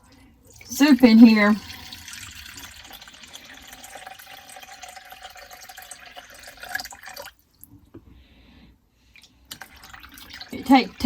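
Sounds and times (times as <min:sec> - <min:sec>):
broth pouring into a bowl: 0:00.5 - 0:07.4, 0:09.5 - 0:11.0.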